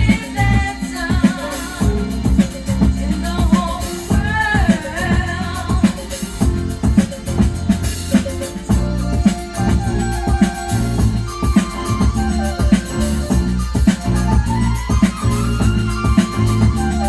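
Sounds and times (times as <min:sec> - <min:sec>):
person singing: 0:00.0 - 0:06.5
bass: 0:00.0 - 0:17.0
disco-funk record playing: 0:00.0 - 0:17.0
drum-kit beat: 0:00.0 - 0:17.0.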